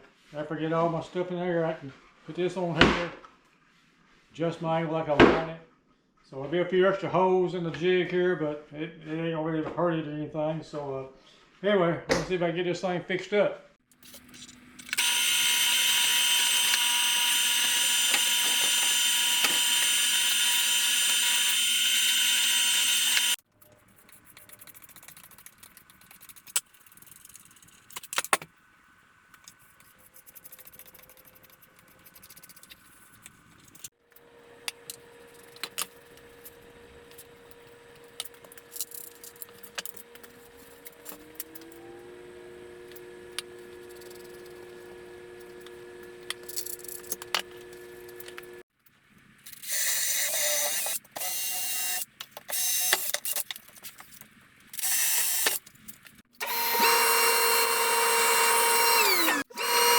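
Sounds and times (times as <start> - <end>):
power drill drilling into wood: 15.0 - 23.4, 54.8 - 55.6, 56.4 - 59.9.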